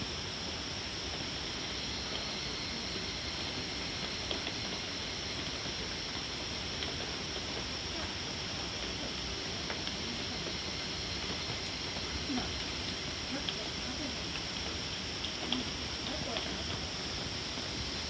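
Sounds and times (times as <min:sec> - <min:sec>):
steady rain falling: 0:00.0 - 0:18.0
faint drip ticks: 0:03.9 - 0:18.0.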